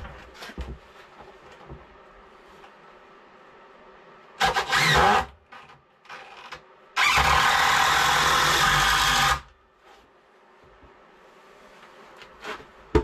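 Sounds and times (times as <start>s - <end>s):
cordless drill running: 7.0s - 9.5s.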